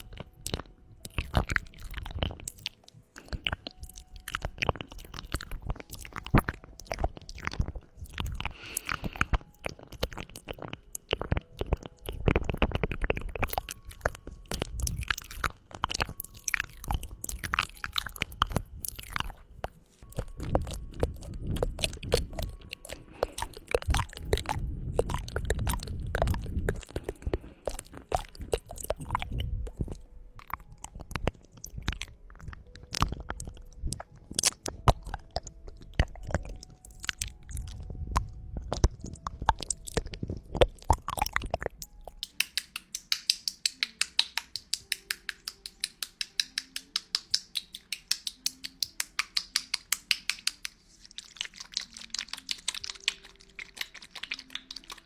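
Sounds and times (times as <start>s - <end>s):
wet tongue clicks and smacks: 0.0s - 55.0s
fast crisp clicks: 42.1s - 55.0s.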